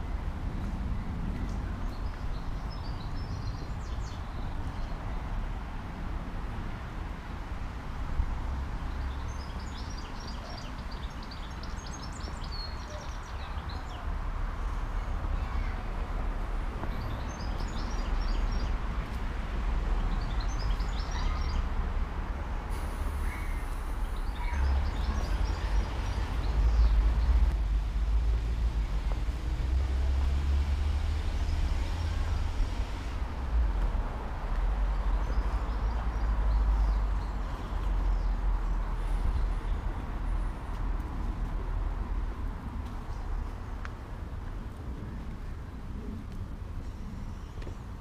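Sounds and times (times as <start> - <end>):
small birds chirping: 8.9 - 15.9, 20.0 - 21.8, 23.1 - 27.6.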